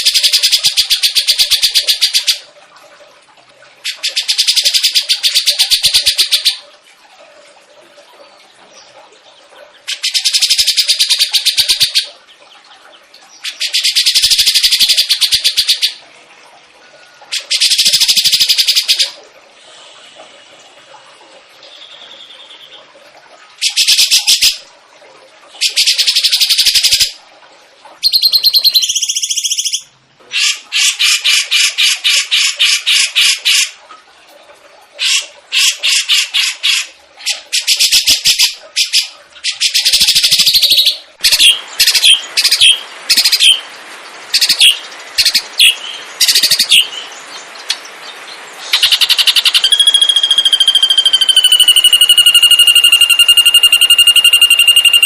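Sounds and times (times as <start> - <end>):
songbird trilling: 28.0 - 29.8, 44.4 - 47.1, 48.7 - 55.0.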